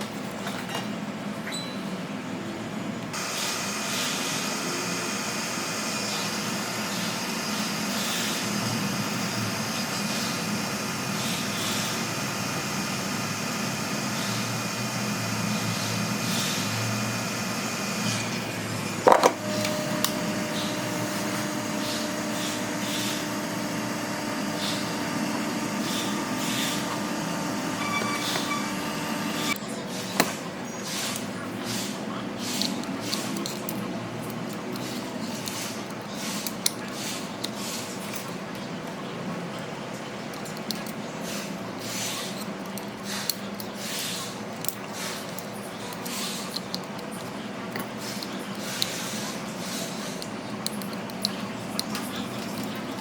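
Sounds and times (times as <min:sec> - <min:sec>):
small motor whirring: 0:03.1 - 0:29.6.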